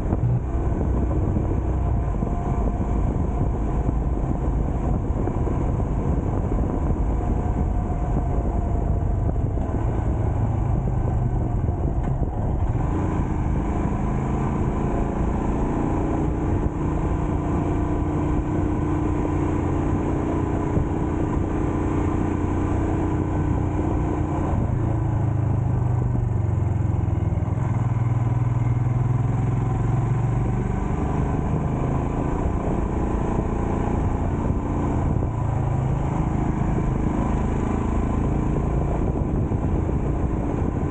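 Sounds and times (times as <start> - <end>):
road noise: 0.0 - 40.9
vehicle engine hum: 0.0 - 40.9.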